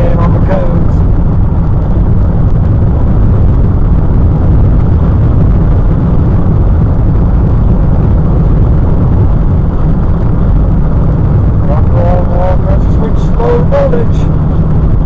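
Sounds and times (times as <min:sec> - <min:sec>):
engine and road noise in car: 0:00.0 - 0:15.0.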